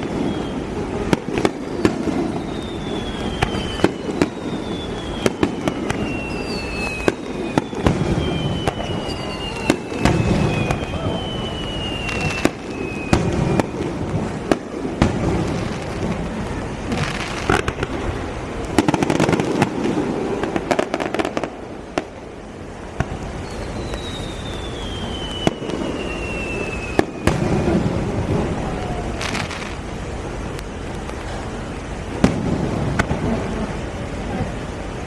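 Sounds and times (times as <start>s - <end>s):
whistling shells: 0.0s - 0.8s, 1.4s - 14.1s, 23.4s - 27.7s
fireworks bangs and crackling: 0.0s - 35.0s
low rumble of bursts: 0.0s - 35.0s.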